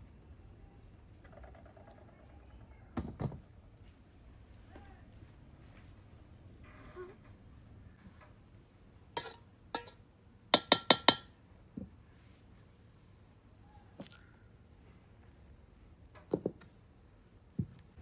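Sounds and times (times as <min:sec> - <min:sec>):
high insect buzz: 0:06.6 - 0:18.0
utensil clinking on metal: 0:09.2 - 0:10.0, 0:10.6 - 0:11.3.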